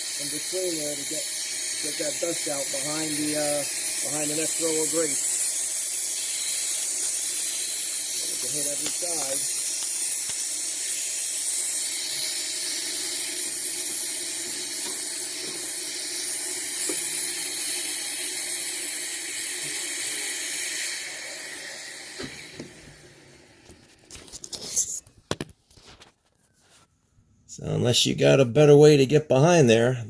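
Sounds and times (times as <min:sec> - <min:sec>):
vacuum cleaner air hiss: 0:00.0 - 0:23.6.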